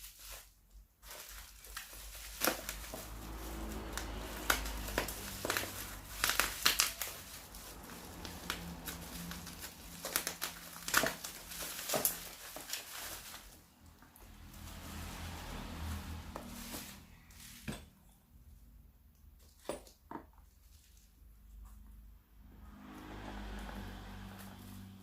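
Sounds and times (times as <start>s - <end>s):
plastic packaging crinkling: 0.0s - 13.6s.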